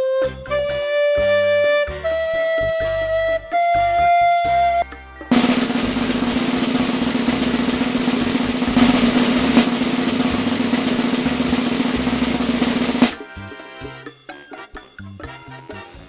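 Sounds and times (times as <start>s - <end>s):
snare drum roll: 5.3s - 13.2s.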